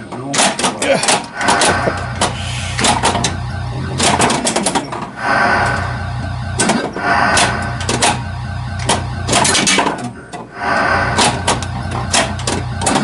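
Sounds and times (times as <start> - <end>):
pinball clacks and knocks: 0.0 - 3.3, 3.9 - 5.2, 8.8 - 10.5, 11.2 - 13.0
low hum: 1.2 - 13.0.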